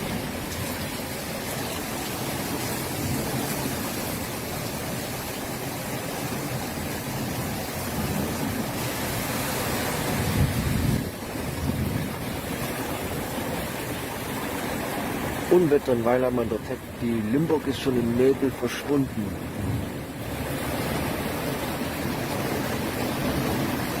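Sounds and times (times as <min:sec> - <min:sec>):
strong wind: 0:00.0 - 0:15.6, 0:19.1 - 0:24.0
heavy rain and hail: 0:00.0 - 0:24.0.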